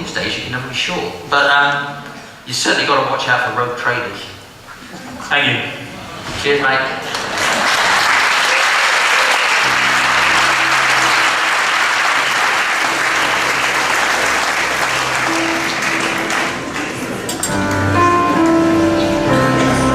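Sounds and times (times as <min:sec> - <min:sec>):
audience applause: 0:07.0 - 0:18.0
music with held low notes: 0:09.6 - 0:19.9.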